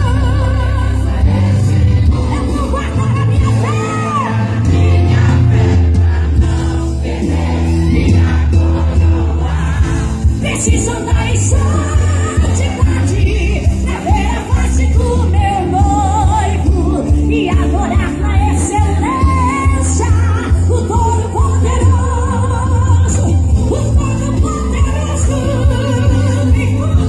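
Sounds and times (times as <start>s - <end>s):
choir singing gospel: 0.0s - 2.8s, 3.4s - 17.3s
amplified band with heavy bass: 0.0s - 27.0s.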